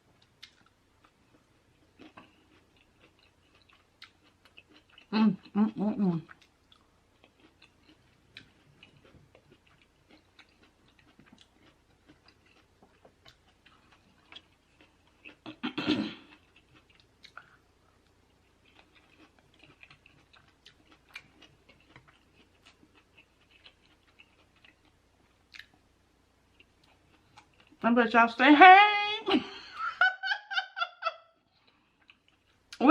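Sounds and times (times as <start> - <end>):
person chewing food: 0.1 - 5.5, 6.2 - 27.8, 31.4 - 32.8.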